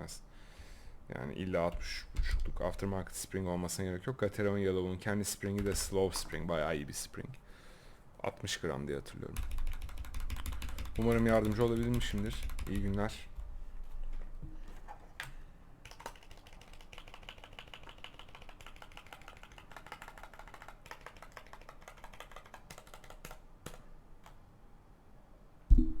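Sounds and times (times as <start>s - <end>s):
mechanical keyboard typing: 5.5s - 6.2s, 9.4s - 13.1s, 15.8s - 24.4s.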